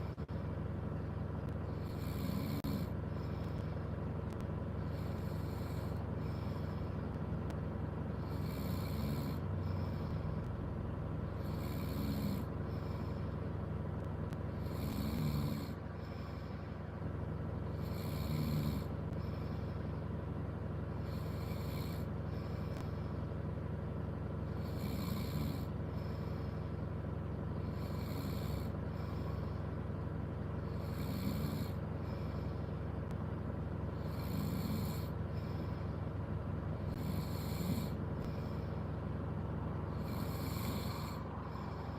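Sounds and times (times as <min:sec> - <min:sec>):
steady low hum: 0:00.0 - 0:41.9
person snoring: 0:01.7 - 0:03.7, 0:04.3 - 0:07.2, 0:08.1 - 0:10.5, 0:11.3 - 0:13.4, 0:14.6 - 0:16.6, 0:17.7 - 0:19.7, 0:21.0 - 0:22.8, 0:24.5 - 0:26.7, 0:27.6 - 0:29.6, 0:30.7 - 0:32.7, 0:33.9 - 0:35.9, 0:36.9 - 0:38.8, 0:39.8 - 0:41.9.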